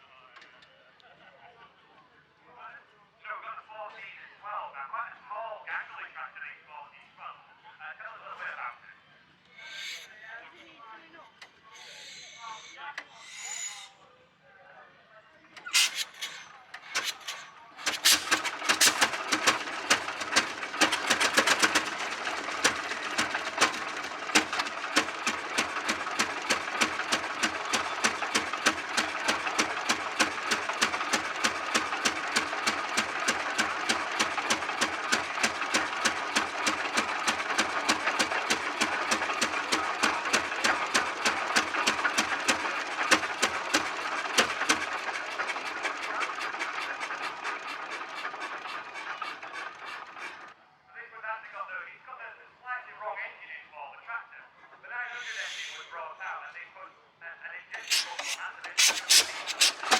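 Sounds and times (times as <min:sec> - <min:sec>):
engine running with mechanical clatter: 0:09.6 - 0:10.2, 0:11.4 - 0:13.9, 0:15.6 - 0:50.6, 0:57.8 - 0:59.9.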